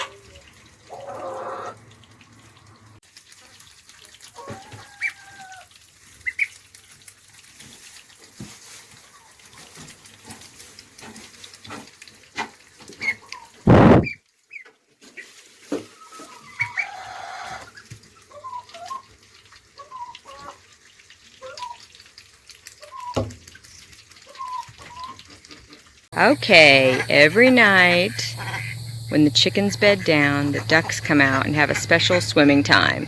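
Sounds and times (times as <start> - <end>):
ducklings peeping: 0.0 - 1.8, 6.2 - 6.6, 16.1 - 19.0, 24.2 - 33.0
water dabbling with wet clicks: 0.0 - 8.3, 17.7 - 33.0
loud burst of noise: 26.2 - 32.8.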